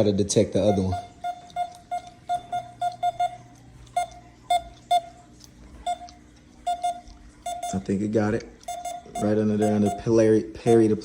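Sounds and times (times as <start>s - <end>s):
metal detector beeping: 0.6s - 3.4s, 4.0s - 5.1s, 6.7s - 11.0s.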